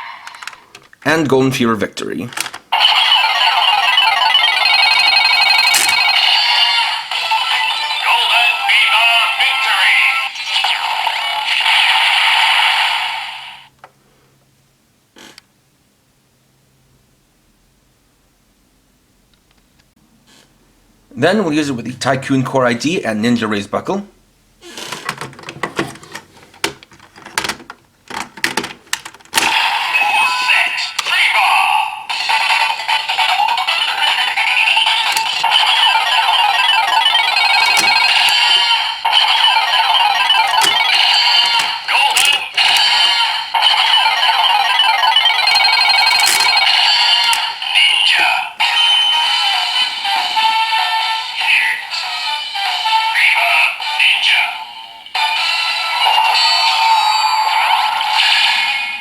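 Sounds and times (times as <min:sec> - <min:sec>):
toy belt electronic jingle: 0:02.8 - 0:09.3, 0:32.2 - 0:48.1
hard plastic clicks and snaps: 0:35.1 - 0:35.5, 0:41.4 - 0:42.9, 0:46.2 - 0:46.5.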